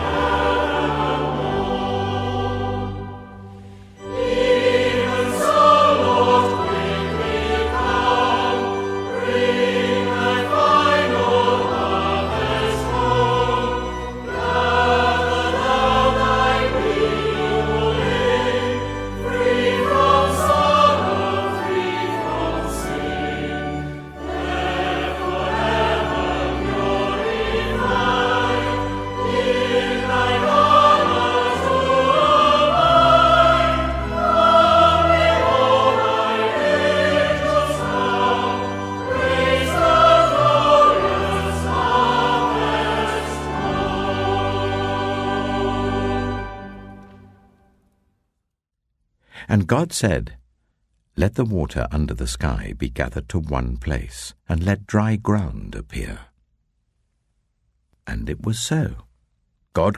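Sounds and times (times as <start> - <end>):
choir singing a hymn: 0.0 - 47.6.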